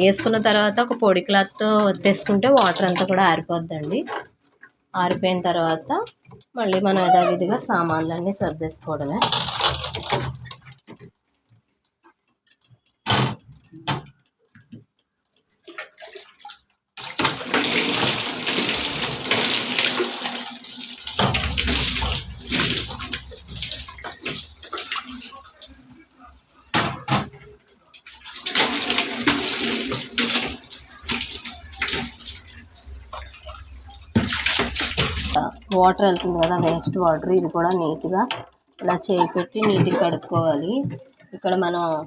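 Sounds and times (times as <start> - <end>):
water running and splashing: 15.6 - 41.3.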